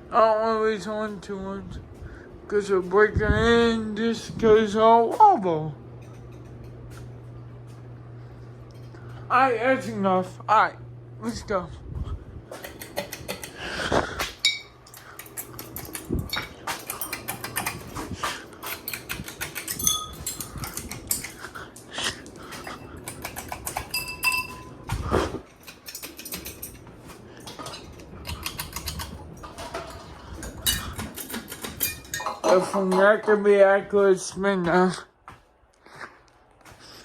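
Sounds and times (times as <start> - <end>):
fans clicking and clinking: 0.0 - 35.5
ceiling fan motor hum: 0.0 - 37.0
metallic pings: 19.8 - 20.4, 23.9 - 24.8.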